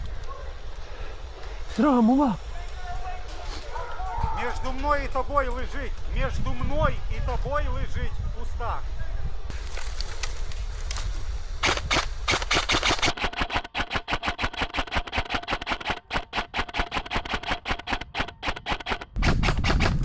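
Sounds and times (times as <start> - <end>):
airsoft gun automatic fire: 11.6 - 20.0.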